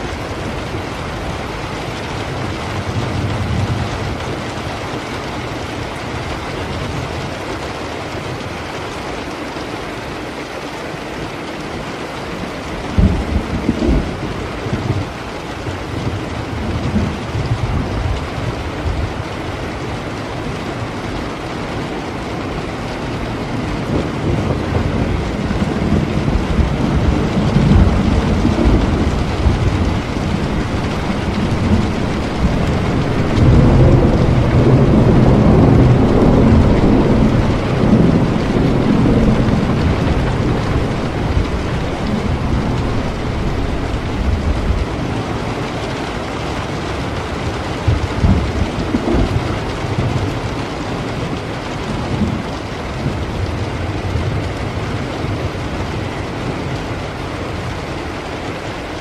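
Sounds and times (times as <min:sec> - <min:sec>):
heavy rainfall: 0:00.0 - 0:59.0
distant thunder rolling: 0:22.8 - 0:45.7, 0:46.6 - 0:55.1.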